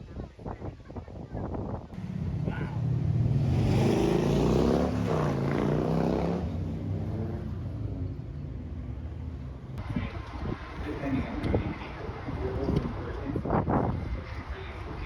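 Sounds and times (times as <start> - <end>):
engine passing by: 2.0 - 9.8.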